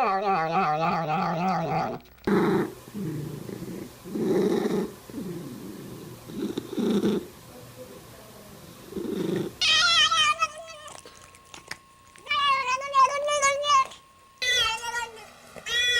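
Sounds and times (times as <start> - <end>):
cat calling: 9.6 - 15.9.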